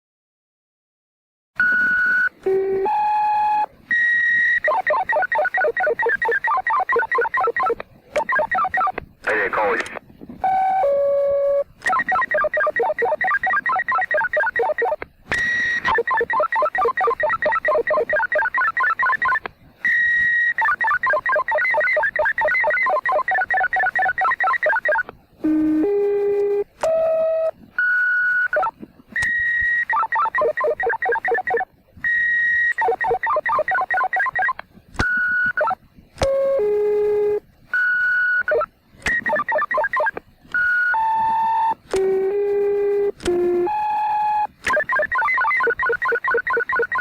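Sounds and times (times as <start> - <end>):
paging tones stepping in pitch: 1.7 - 9.0, 10.5 - 25.0, 26.8 - 34.6, 38.1 - 42.1, 43.2 - 47.0
rapidly pulsing tones: 4.6 - 9.0, 11.9 - 19.4, 20.4 - 25.0
sharp clicks: 4.6 - 10.0, 11.8 - 19.5, 26.4 - 27.0, 28.6 - 31.6, 32.7 - 36.4, 38.5 - 42.3, 43.1 - 43.6, 44.5 - 47.0.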